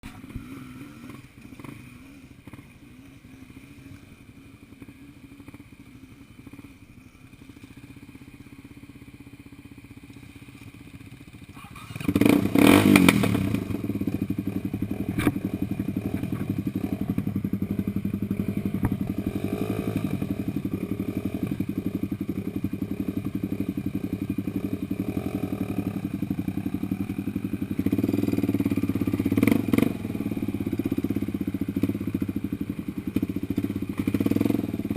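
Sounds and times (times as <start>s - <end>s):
off-road vehicle engine revving: 0.0s - 4.2s, 11.5s - 34.9s.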